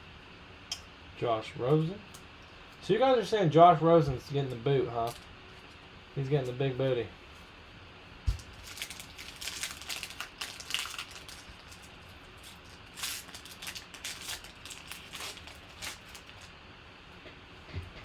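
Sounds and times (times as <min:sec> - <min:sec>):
cards and wrappers rustling: 0:08.3 - 0:16.5.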